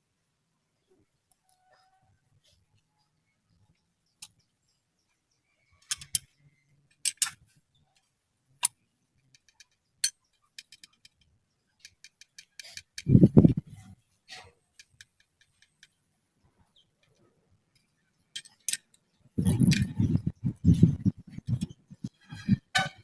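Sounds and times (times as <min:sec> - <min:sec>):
metal tools clinking: 0:18.3 - 0:18.9.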